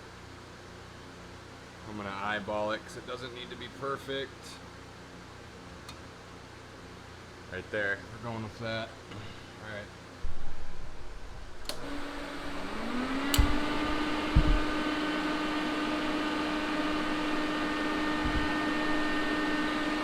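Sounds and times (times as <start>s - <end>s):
electric motor spinning up: 11.5s - 20.0s
switch click: 11.6s - 12.0s, 13.2s - 14.7s.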